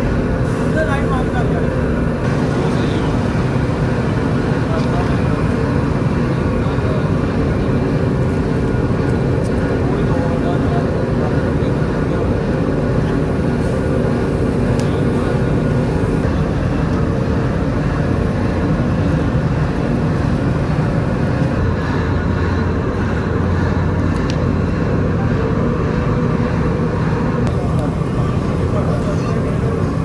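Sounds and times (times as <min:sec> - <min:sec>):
industrial machinery drone: 0:00.0 - 0:30.0.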